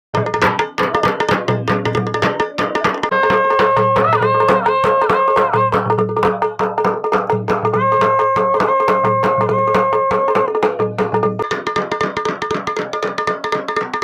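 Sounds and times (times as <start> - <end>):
drums played fast: 0.1 - 14.0
horn long held tones: 3.1 - 5.9, 7.8 - 10.6.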